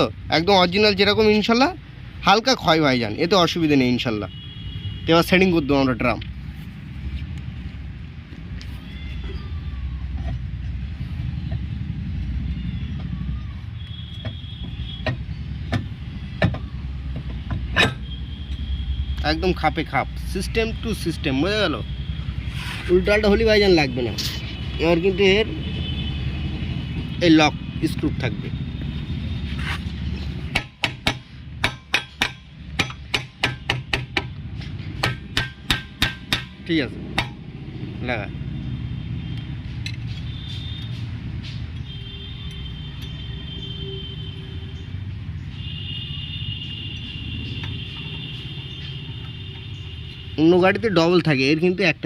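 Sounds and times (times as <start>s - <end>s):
hammer striking steel brake drum: 30.6s - 34.3s, 35.0s - 36.6s.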